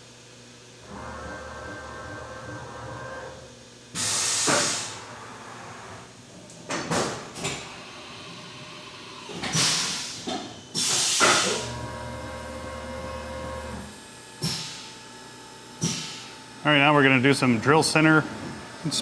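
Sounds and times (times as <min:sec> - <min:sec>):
machine hum with faint whine: 0:00.0 - 0:19.0
sharp air hisses: 0:04.0 - 0:05.0, 0:09.5 - 0:11.6.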